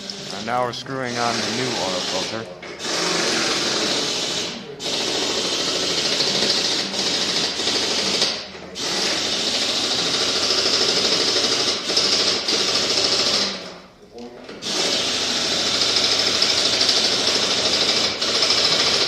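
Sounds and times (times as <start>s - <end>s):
tool rattling rapidly: 14.6s - 19.0s.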